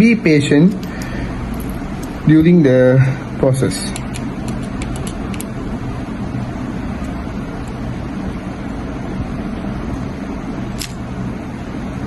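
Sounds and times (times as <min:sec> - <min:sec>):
faint hum: 0:00.0 - 0:12.0
low background rumble: 0:00.0 - 0:12.0.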